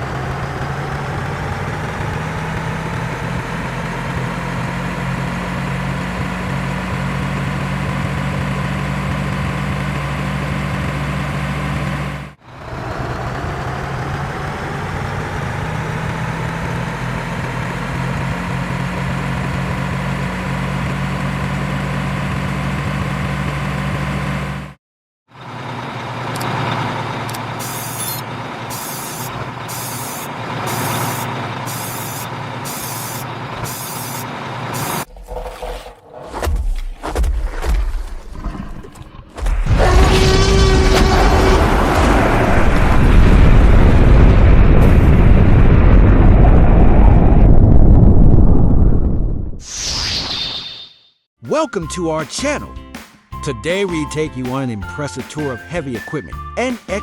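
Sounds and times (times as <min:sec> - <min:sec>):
diesel machinery humming: 0:00.0 - 0:35.6.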